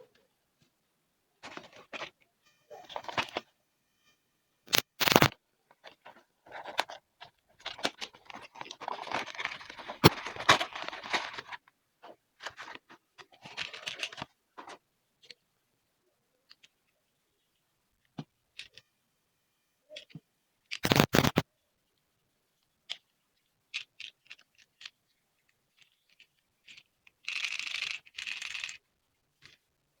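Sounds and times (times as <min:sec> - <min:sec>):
packaging crinkling and tearing: 0:04.7 - 0:11.6.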